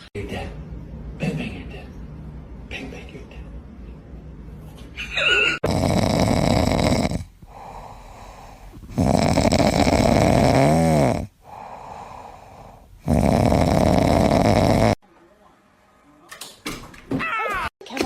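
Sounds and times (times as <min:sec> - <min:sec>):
loud snoring: 0:05.6 - 0:15.0
quiet breaths: 0:07.2 - 0:10.2, 0:11.3 - 0:15.0.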